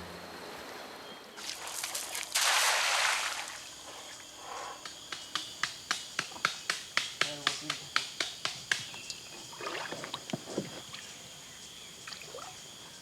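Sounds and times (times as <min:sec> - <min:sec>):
sharp knocks: 0:04.8 - 0:08.9.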